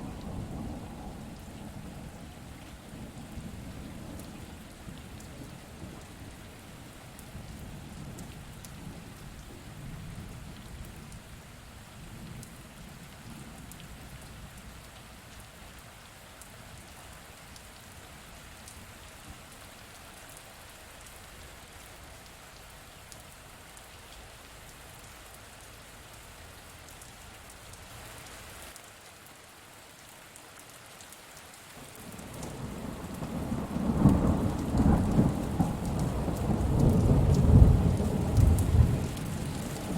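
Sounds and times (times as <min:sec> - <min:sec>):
steady rain falling: 0:00.0 - 0:39.9
distant thunder rumbling: 0:32.1 - 0:39.9.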